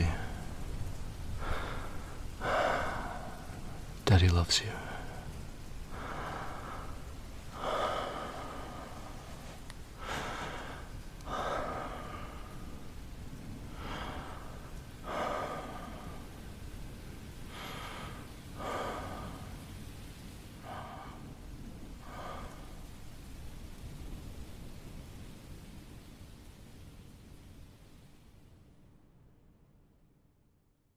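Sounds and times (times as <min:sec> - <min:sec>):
man breathing deeply: 0:00.1 - 0:04.0, 0:04.8 - 0:23.9.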